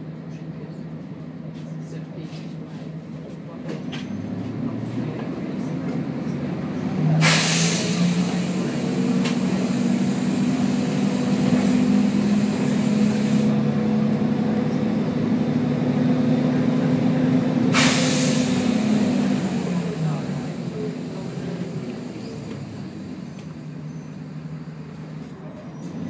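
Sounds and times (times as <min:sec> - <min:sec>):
bus engine running: 0:00.0 - 0:26.0
compressed air hissing: 0:07.2 - 0:13.6, 0:17.8 - 0:18.9.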